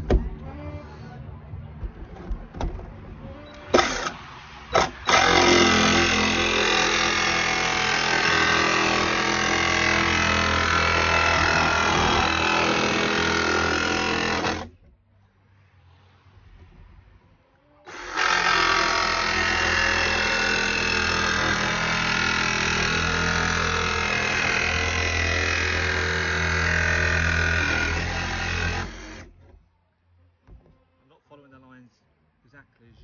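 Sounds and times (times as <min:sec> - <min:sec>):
jigsaw cutting sheet metal: 0:03.7 - 0:14.7, 0:17.9 - 0:29.3.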